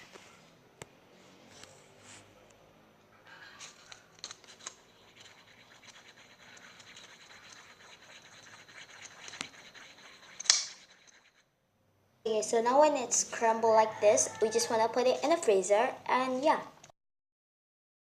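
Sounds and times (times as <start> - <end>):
slime being stirred scraping: 3.6 - 11.5.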